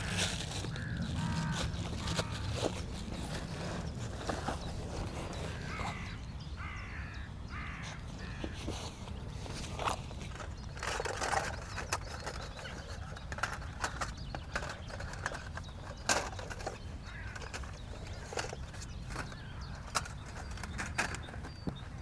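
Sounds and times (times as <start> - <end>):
brief rustle: 7.8 - 21.5
irregular clicks and knocks: 9.6 - 21.8.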